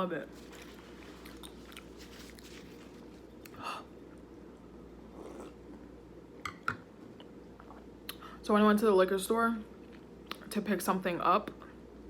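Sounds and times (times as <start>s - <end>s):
person chewing food: 0.4s - 4.3s.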